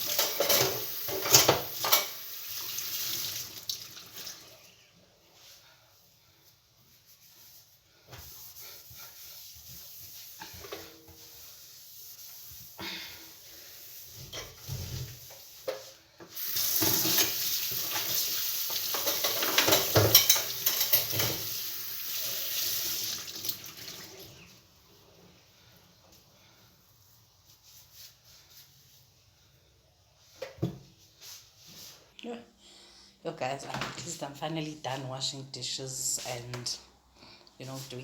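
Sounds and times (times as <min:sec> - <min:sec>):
crockery knocking and clinking: 0:18.9 - 0:21.4.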